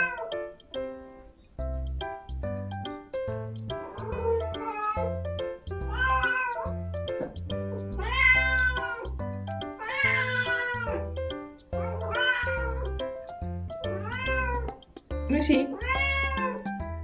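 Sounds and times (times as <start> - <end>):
cat meowing: 0.0 - 0.3, 3.8 - 5.2, 5.8 - 6.8, 7.8 - 9.2, 9.8 - 11.1, 11.7 - 13.0, 13.8 - 14.8, 15.7 - 16.8
background music: 0.0 - 17.0.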